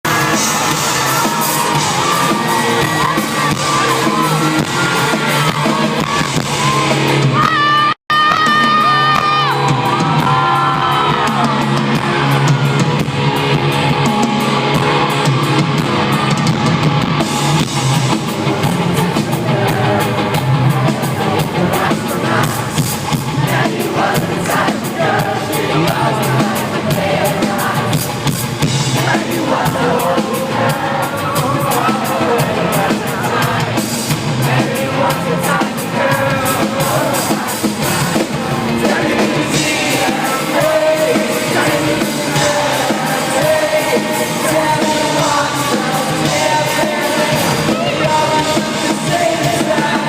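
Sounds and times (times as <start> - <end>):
rock band playing live: 0.0 - 50.0
person singing: 29.0 - 50.0.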